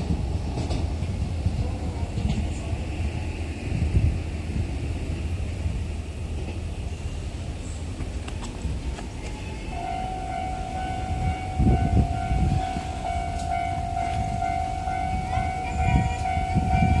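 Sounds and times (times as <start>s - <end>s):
level crossing warning alarm: 9.3s - 17.0s.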